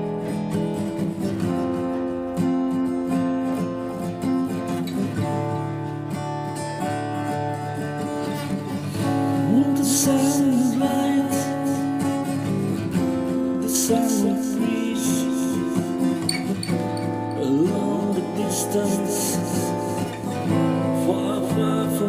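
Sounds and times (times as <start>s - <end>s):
acoustic guitar strumming: 0.0s - 22.0s
person singing wordlessly: 9.3s - 12.2s, 13.5s - 16.3s, 17.1s - 22.0s.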